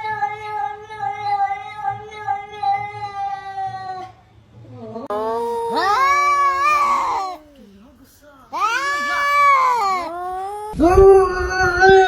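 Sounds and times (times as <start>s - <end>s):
cat yowling: 5.1s - 7.4s, 8.6s - 10.3s.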